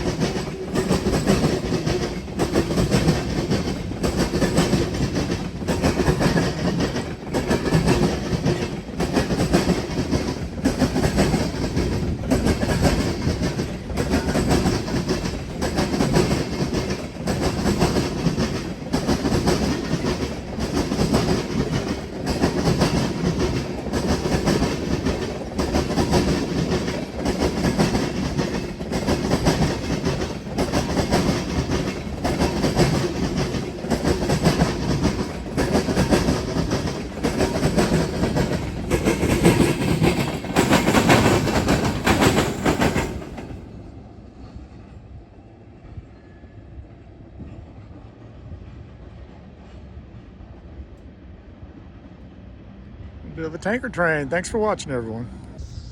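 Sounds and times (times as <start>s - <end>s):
train wheels clattering over crossing: 0.0s - 44.9s.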